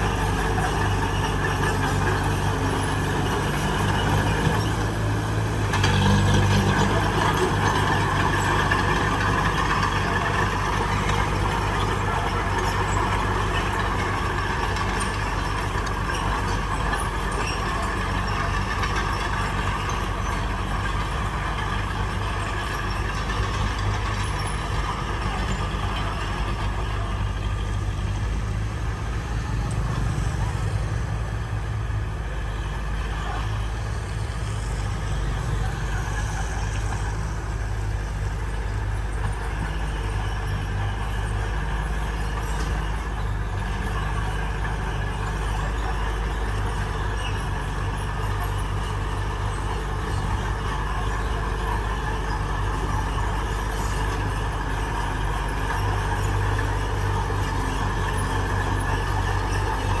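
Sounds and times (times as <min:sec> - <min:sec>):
diesel machinery engine drone: 0:00.0 - 1:00.0.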